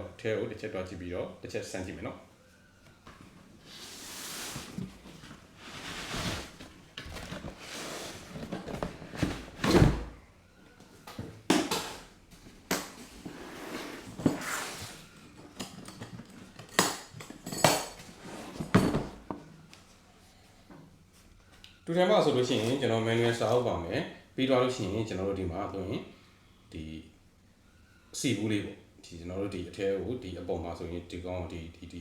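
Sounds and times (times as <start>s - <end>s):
packaging rustling and sliding: 3.6s - 10.0s.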